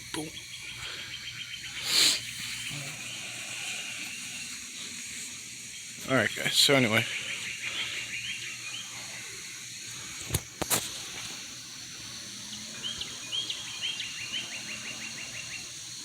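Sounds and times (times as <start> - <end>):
songbird singing fast trills: 0.0 - 4.4, 5.6 - 9.4, 12.3 - 16.0
steady high outdoor hiss: 0.0 - 16.0.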